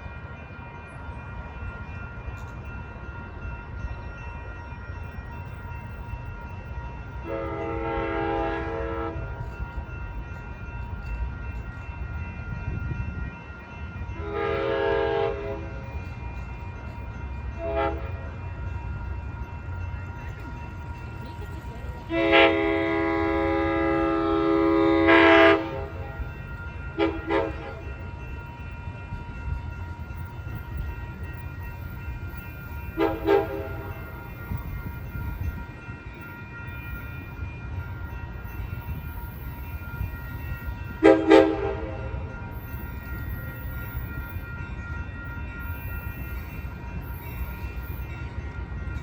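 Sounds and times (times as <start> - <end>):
train rumbling: 0.0 - 49.0
train air horn blasts: 7.2 - 9.4, 14.2 - 15.8, 17.6 - 18.3, 22.1 - 26.2, 27.0 - 27.8, 33.0 - 34.0, 41.0 - 42.3.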